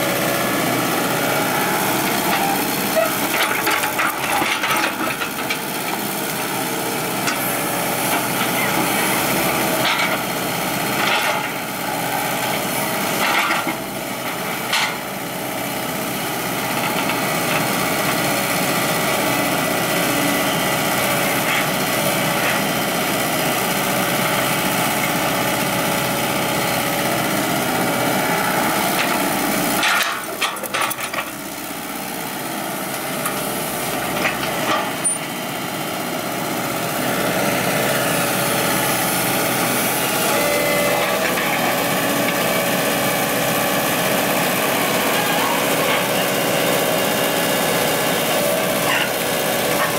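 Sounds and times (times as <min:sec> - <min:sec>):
hydraulic excavator running: 0:00.0 - 0:49.9.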